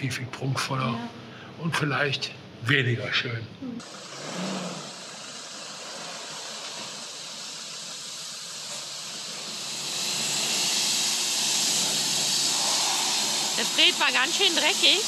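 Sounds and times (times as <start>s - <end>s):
pressure washer spraying water: 3.8s - 15.0s.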